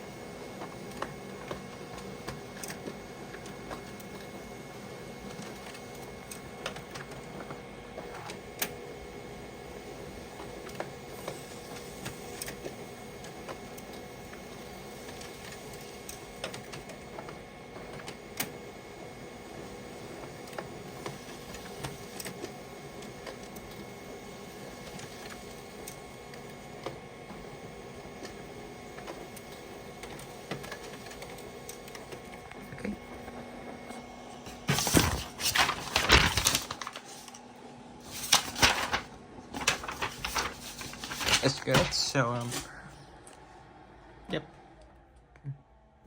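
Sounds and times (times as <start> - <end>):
printer mechanical hum: 0.0 - 46.0
printer clicks and ticks: 0.6 - 4.4, 5.2 - 8.8.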